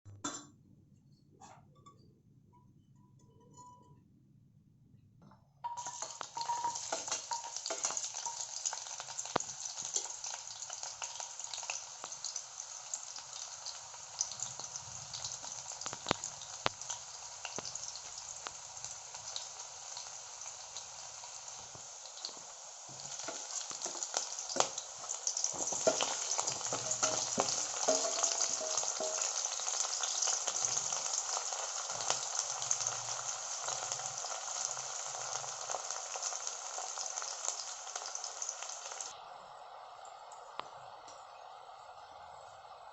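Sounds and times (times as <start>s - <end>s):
food sizzling in hot oil: 5.7s - 39.2s.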